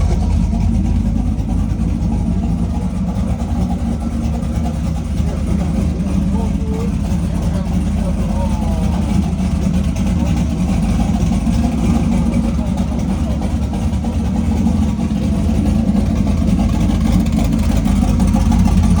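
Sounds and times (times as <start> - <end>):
vehicle engine running: 0.0 - 19.0.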